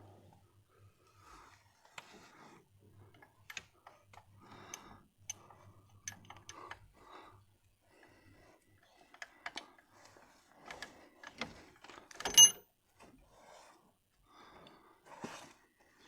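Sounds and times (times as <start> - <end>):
spanner clicking and scraping: 12.2 - 12.6.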